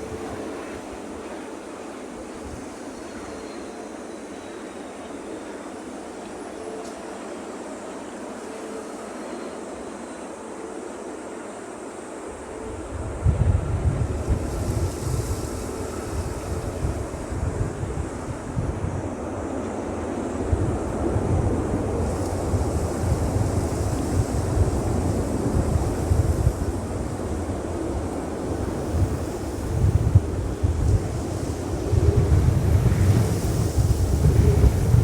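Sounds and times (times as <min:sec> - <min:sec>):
wind buffeting microphone: 0:12.6 - 0:35.0.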